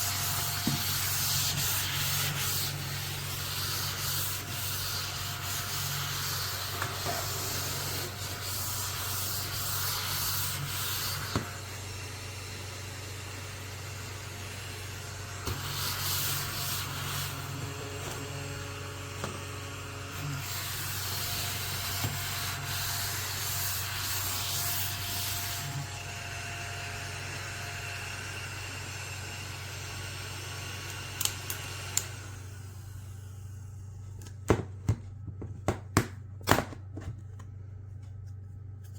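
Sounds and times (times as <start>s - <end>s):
brushing against a surface: 0.0s - 11.3s.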